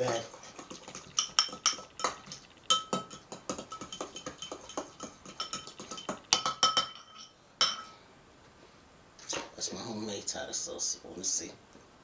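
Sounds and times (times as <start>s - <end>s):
utensil clinking against container: 0.0s - 7.9s.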